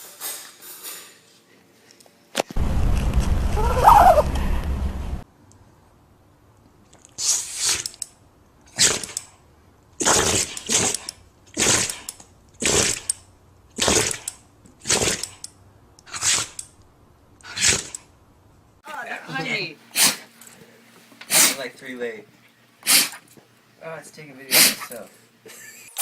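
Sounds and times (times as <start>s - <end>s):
dog sneezing: 7.2s - 7.8s, 16.1s - 16.6s, 17.4s - 17.9s, 19.9s - 20.3s, 21.2s - 21.7s, 22.8s - 23.3s, 24.5s - 25.0s.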